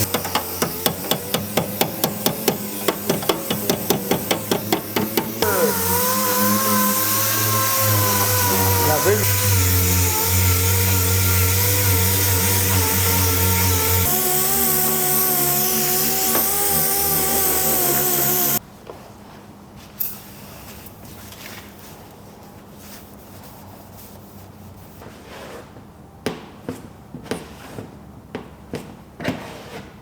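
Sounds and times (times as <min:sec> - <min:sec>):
power tool whining: 0:00.0 - 0:18.6.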